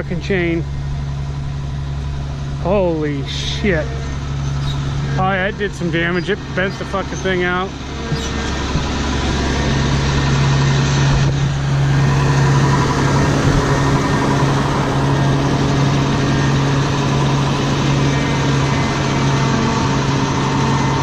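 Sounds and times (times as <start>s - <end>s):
diesel engine droning: 0.0s - 21.0s.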